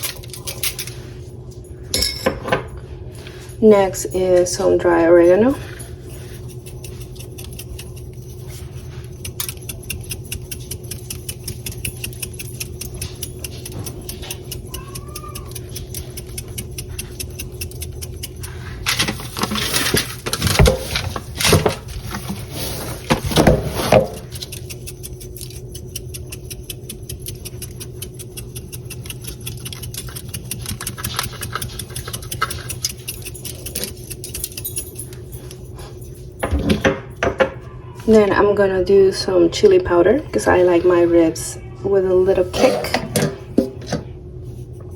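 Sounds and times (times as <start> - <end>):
knocks and rustling: 18.9 - 24.2.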